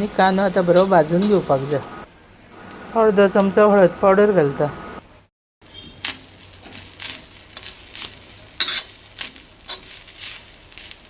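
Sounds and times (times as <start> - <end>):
utensil scraping and stirring in pan: 0.0 - 1.8, 5.7 - 11.0
faint sizzle of frying: 0.0 - 3.4, 5.6 - 11.0.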